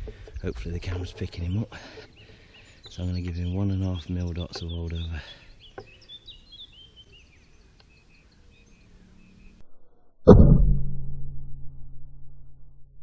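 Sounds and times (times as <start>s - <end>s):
faint bird chirps: 0.1s - 10.0s
low lingering hum: 8.2s - 13.0s.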